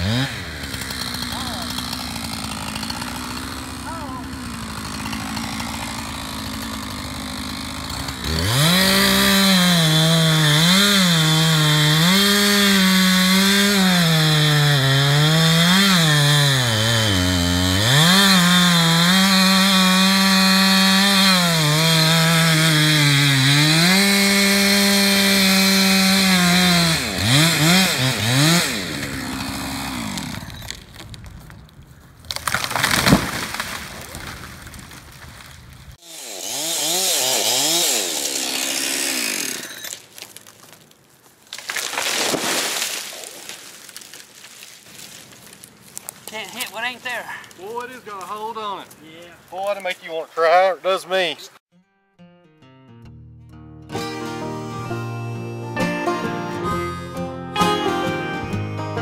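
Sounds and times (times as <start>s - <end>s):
chainsaw cutting wood: 0.0s - 31.2s, 32.3s - 40.8s.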